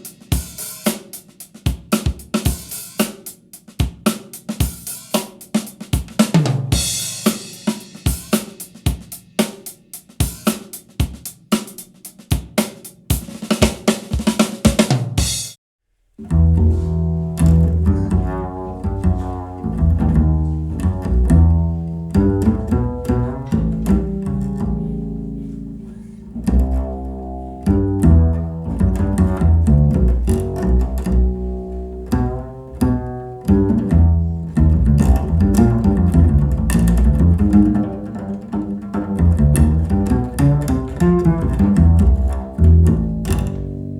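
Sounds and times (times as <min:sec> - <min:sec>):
drum kit playing: 0:00.0 - 0:15.6, 0:16.5 - 0:25.6, 0:26.3 - 0:43.9
deep plucked bass line: 0:16.2 - 0:43.9.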